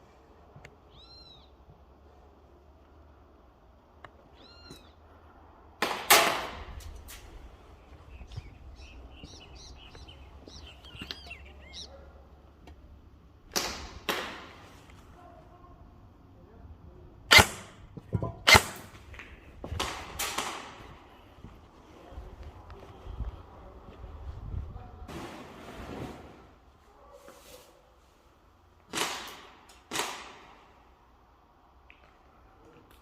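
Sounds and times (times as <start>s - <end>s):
bird chirping: 0.9s - 1.6s, 4.3s - 5.0s, 7.8s - 12.0s
airsoft gun shots: 5.8s - 6.7s, 13.5s - 14.6s, 17.3s - 18.9s, 19.8s - 20.8s, 28.9s - 30.6s.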